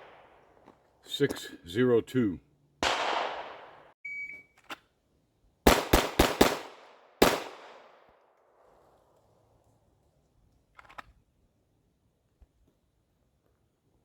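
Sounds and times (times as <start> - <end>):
pistol shots echoing: 2.8 - 3.9, 5.6 - 8.0
shot timer beep: 4.0 - 4.6.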